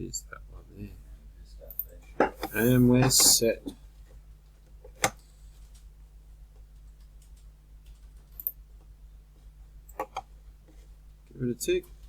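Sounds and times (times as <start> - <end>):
computer mouse clicks: 6.7 - 8.6.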